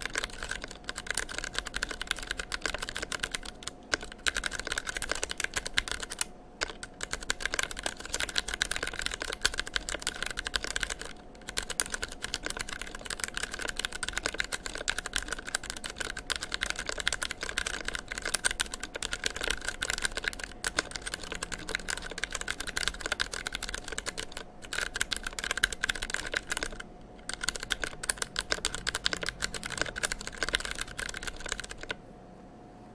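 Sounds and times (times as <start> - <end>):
fast typing on mechanical keyboard: 0.0 - 32.0.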